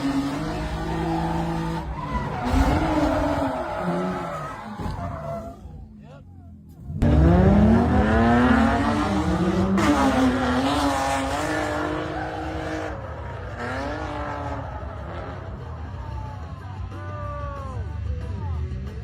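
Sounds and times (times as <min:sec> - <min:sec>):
car engine revving: 0:00.0 - 0:06.1, 0:06.7 - 0:16.2.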